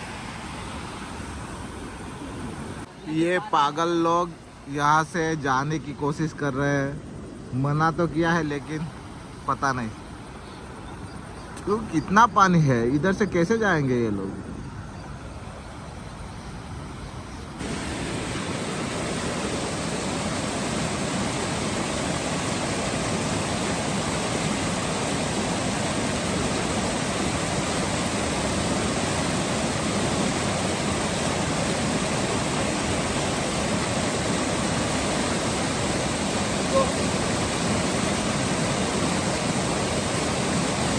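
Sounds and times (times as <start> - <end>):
river water rushing: 0.0 - 4.8, 17.6 - 40.9.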